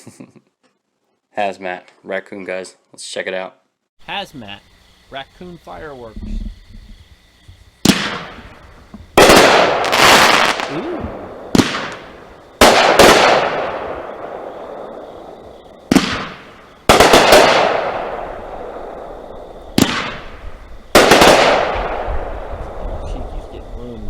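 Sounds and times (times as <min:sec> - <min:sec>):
firework bangs with hiss: 0:07.8 - 0:23.1.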